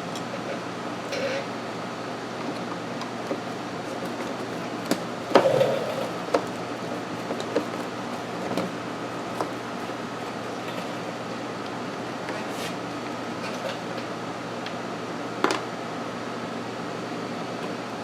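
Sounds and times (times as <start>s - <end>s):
steady hum: 5.1s - 7.2s.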